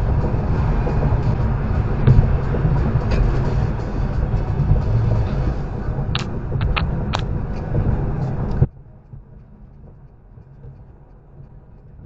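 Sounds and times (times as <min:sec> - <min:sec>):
loud vehicle driving noise: 0:00.0 - 0:08.7
low road hum: 0:00.0 - 0:12.0
sharp clicks: 0:06.2 - 0:07.3.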